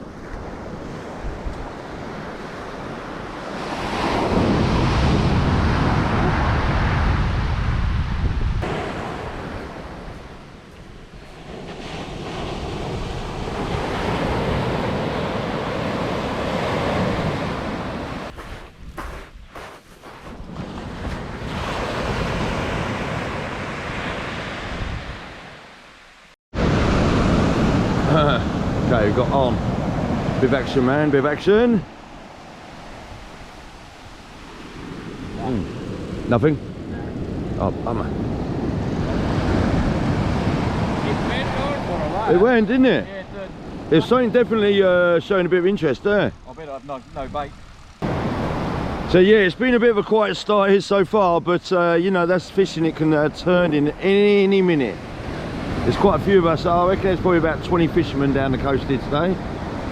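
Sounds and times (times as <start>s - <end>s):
surf on pebble beach: 0.0s - 7.7s, 8.6s - 26.0s, 26.6s - 45.6s, 46.5s - 51.2s
wind buffeting microphone: 0.0s - 25.2s
waves on pebble beach: 8.6s - 25.6s.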